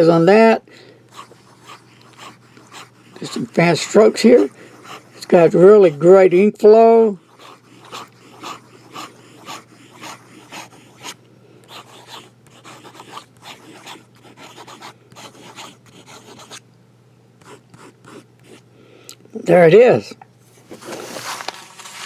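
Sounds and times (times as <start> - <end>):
fountain pen scratching on paper: 1.1 - 5.9, 7.2 - 16.6, 17.4 - 18.6.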